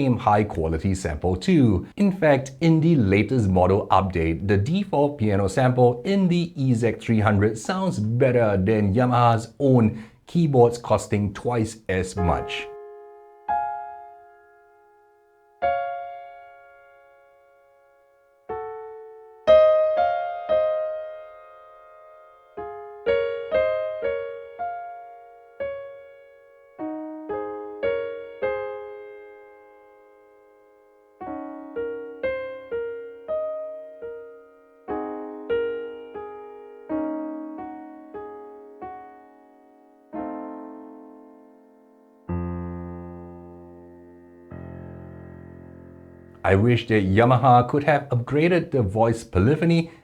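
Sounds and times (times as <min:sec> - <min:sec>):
keyboard piano melody with chords: 0:12.2 - 0:47.7.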